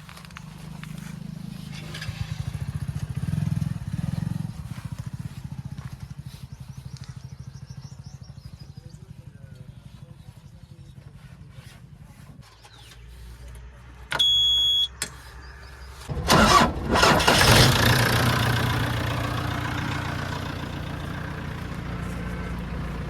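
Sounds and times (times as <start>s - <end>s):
diesel engine starting and running: 0.0s - 8.5s, 12.5s - 23.0s
high-pitched beep: 14.2s - 15.0s.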